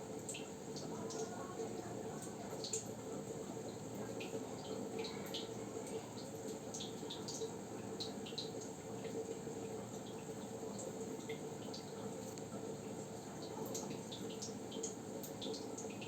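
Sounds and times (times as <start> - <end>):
water trickling and splashing: 0.0 - 16.0.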